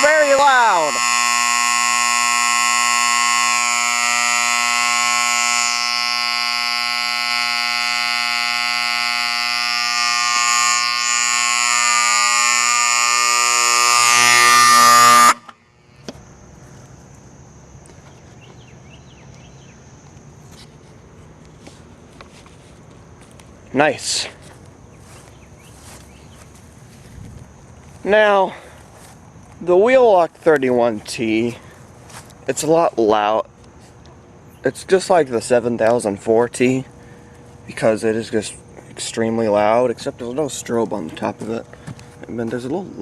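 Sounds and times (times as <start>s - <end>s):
horn alarm buzzing blare: 0.0s - 15.6s.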